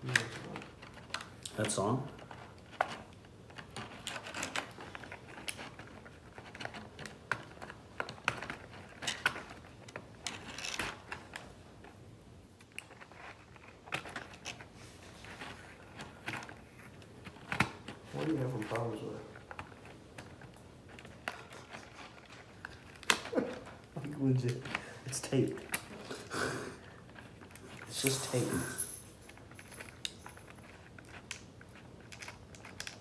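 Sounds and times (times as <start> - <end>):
small plastic parts clicking: 29.3 - 33.0.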